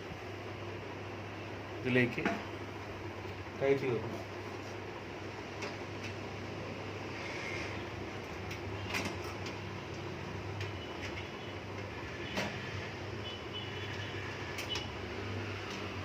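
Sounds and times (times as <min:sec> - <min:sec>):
steady background hum: 0:00.0 - 0:16.0.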